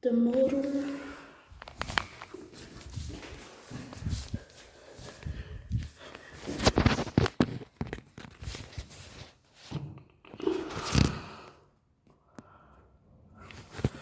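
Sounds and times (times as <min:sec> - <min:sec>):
handling knocks and scrapes: 0:01.6 - 0:11.2.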